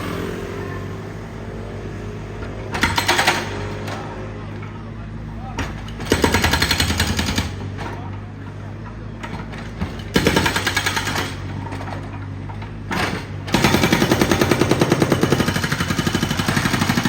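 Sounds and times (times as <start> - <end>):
engine hum: 0.0 - 17.0
road breaker hammering: 5.5 - 8.2, 9.3 - 17.0.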